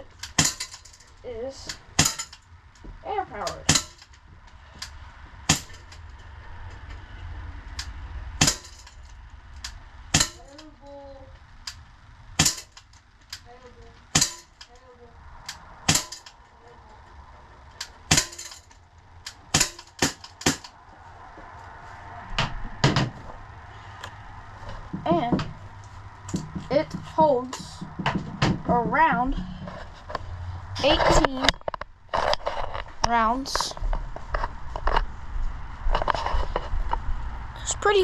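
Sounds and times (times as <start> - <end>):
bb pistol shots: 19.5 - 20.7.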